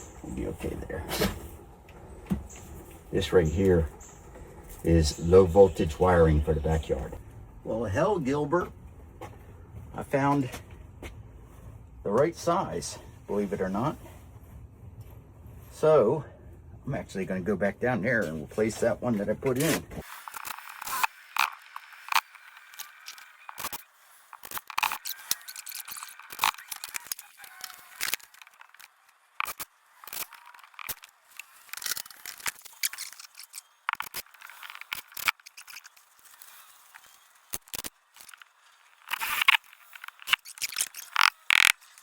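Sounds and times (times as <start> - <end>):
hands working with tools: 19.5 - 42.0.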